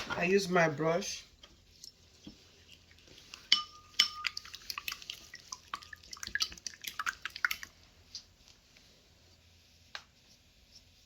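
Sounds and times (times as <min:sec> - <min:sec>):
utensils clinking on glass bowl: 0:03.4 - 0:04.9.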